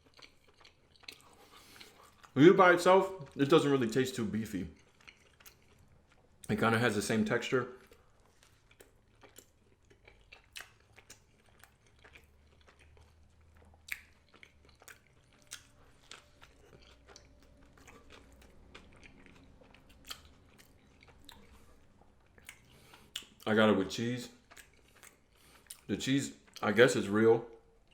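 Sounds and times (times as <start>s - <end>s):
person chewing food: 0.0s - 3.6s, 4.6s - 6.6s, 7.7s - 23.6s, 24.3s - 26.7s, 27.5s - 27.9s
wet mouth clicks and smacks: 13.7s - 17.3s, 18.1s - 23.5s, 24.5s - 25.9s.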